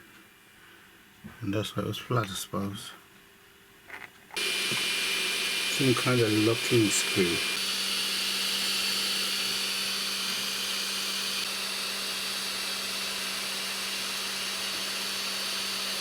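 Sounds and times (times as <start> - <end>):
printer fan whirring: 4.3 - 16.0
thin high whine: 4.4 - 7.8.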